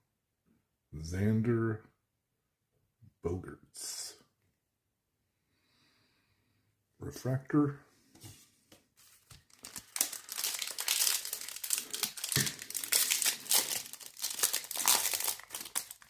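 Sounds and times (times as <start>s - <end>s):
foil wrapper crinkling: 9.0s - 16.0s.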